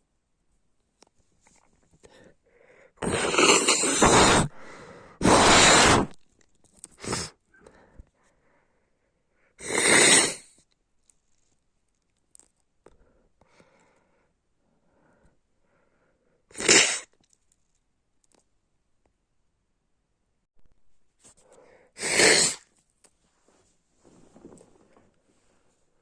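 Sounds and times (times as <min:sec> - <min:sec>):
woman sneezing and coughing: 0:03.0 - 0:04.6.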